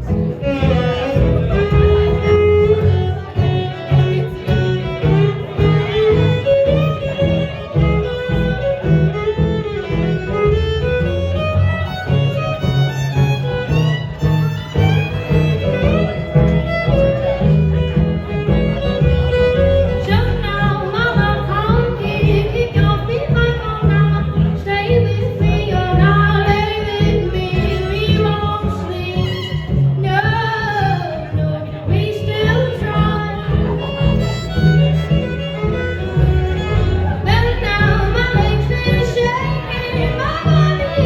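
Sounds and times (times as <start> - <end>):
fiddle: 0.0 - 41.0
steady bass: 0.0 - 41.0
woman singing: 20.0 - 29.4, 30.0 - 33.8, 37.2 - 41.0.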